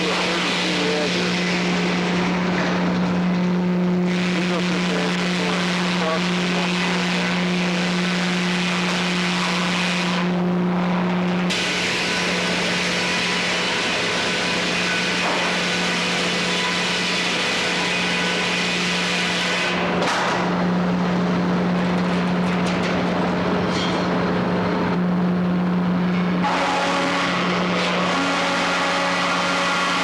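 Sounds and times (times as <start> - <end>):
circular saw blade cutting log: 0.0 - 1.9, 26.4 - 30.0
power unit drone: 0.0 - 30.0.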